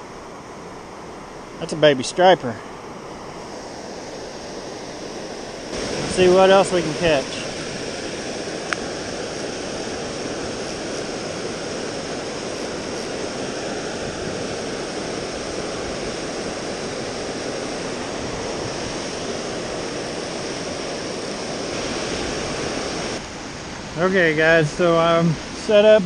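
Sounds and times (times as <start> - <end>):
water rushing down spillway: 5.6 - 23.2.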